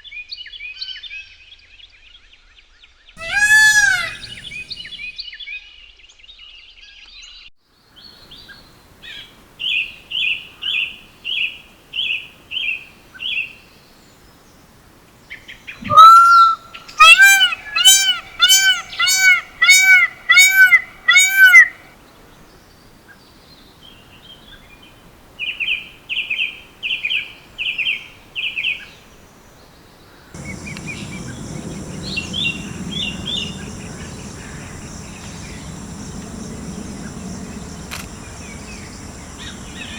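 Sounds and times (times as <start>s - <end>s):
background hiss: 3.2s - 5.1s, 8.0s - 39.9s
peacock calling: 3.2s - 5.1s, 15.8s - 21.9s, 30.4s - 39.9s.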